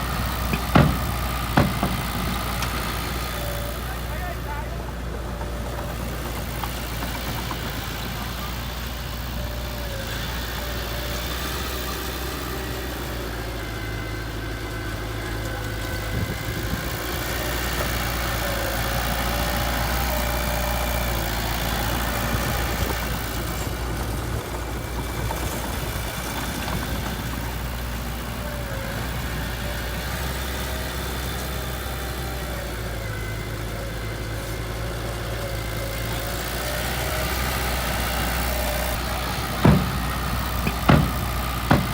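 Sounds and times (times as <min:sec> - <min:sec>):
diesel engine idling: 0:00.0 - 0:41.9.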